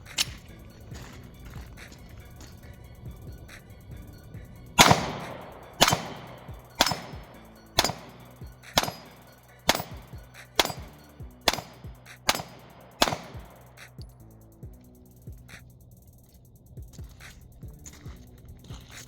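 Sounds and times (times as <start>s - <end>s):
pistol shots: 4.8s - 13.9s.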